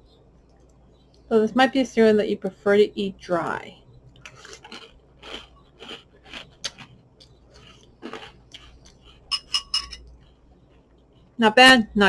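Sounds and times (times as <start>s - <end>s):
crunchy cereal being chewed: 4.1s - 9.3s.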